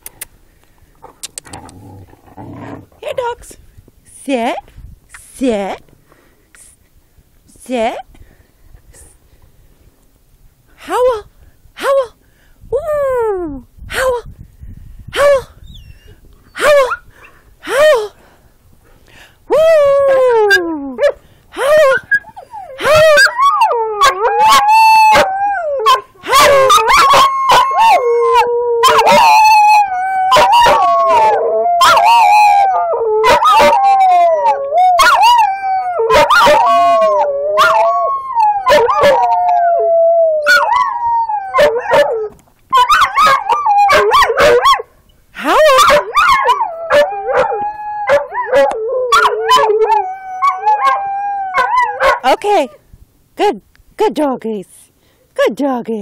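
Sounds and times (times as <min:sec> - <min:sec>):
dogs howling: 0:21.9 - 0:44.8, 0:45.6 - 0:52.2.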